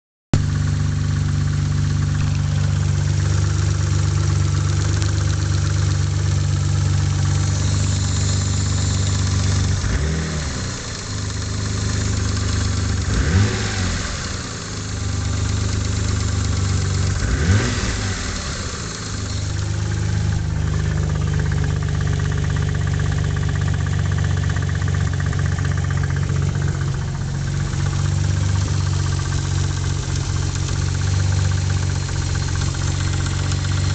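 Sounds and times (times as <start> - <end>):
car engine idling and revving: 0.4 - 33.9.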